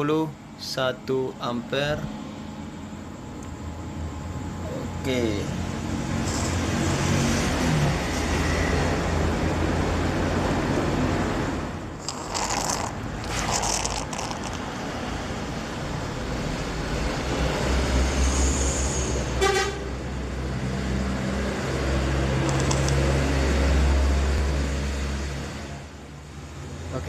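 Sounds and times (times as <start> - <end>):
welding machine humming: 6.2 - 7.1, 12.0 - 14.8
short horn-like toot: 19.4 - 19.9.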